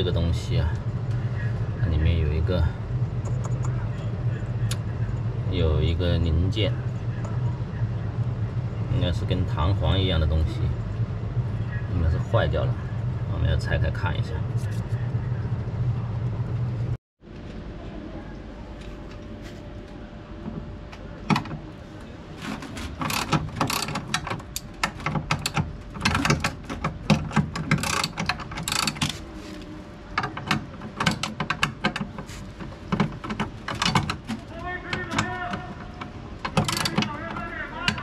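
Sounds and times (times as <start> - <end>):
low hum: 0.0 - 37.8
tools and parts clattering: 22.4 - 38.0.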